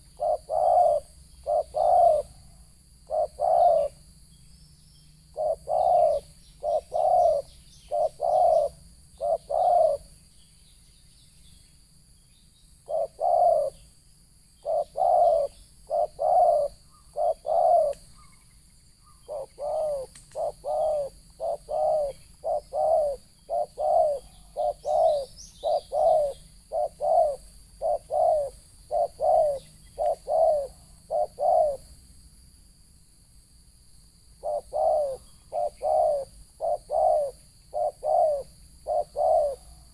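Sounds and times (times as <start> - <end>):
dove cooing: 0.0 - 4.1, 5.3 - 10.2, 12.8 - 13.9, 14.6 - 18.4, 19.0 - 31.9, 34.4 - 39.9.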